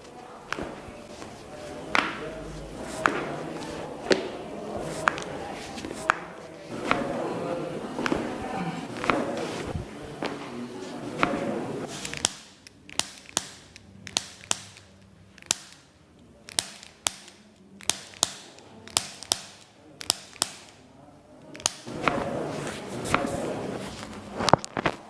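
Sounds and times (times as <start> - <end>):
soft noise: 0.0 - 25.0
chiropractic adjustment cracks: 0.5 - 7.2, 11.2 - 20.9, 23.1 - 25.0.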